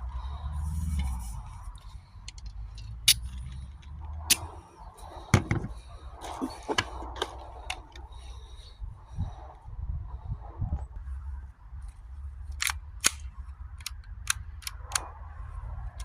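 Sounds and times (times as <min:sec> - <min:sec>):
airsoft pistol clicking: 0:12.5 - 0:15.1
light mechanical ticks: 0:12.6 - 0:15.1.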